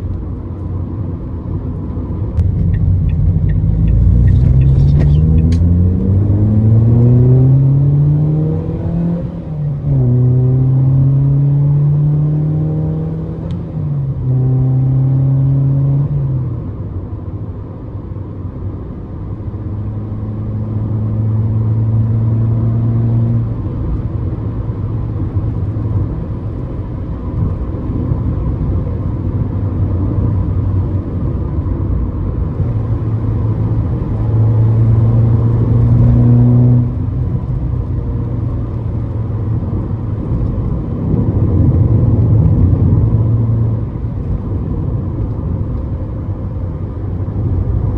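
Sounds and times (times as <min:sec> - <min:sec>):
car engine running: 0:00.0 - 0:11.8, 0:23.5 - 0:47.9
road rumble: 0:00.0 - 0:47.9.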